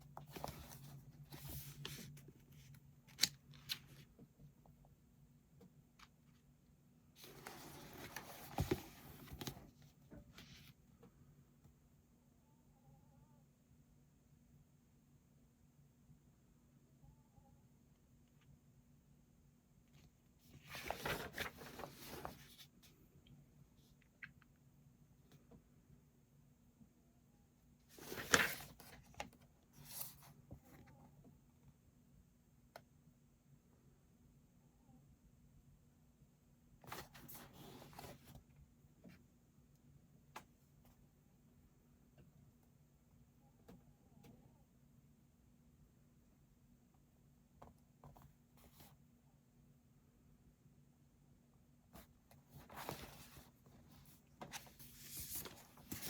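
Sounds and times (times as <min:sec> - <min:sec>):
book pages rustling: 0:00.2 - 0:04.1, 0:07.2 - 0:10.8, 0:20.5 - 0:22.9, 0:27.9 - 0:30.6, 0:36.8 - 0:38.4, 0:52.0 - 0:56.0.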